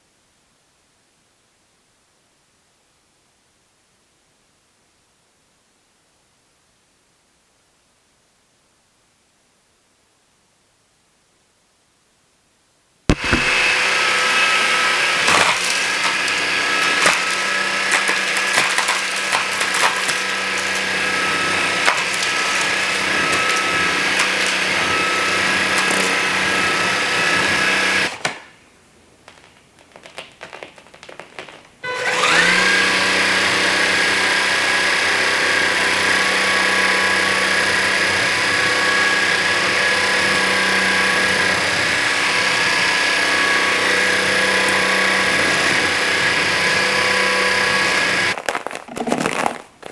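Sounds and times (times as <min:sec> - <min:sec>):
stick vacuum running: 0:13.1 - 0:28.4, 0:31.8 - 0:48.4
cereal rattling into vacuum: 0:13.1 - 0:28.5, 0:29.3 - 0:49.9.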